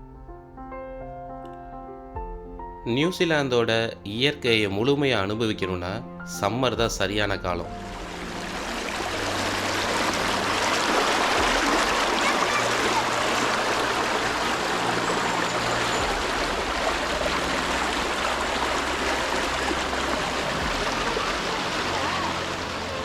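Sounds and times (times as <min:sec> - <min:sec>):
stream rushing over rocks: 0:07.7 - 0:23.0.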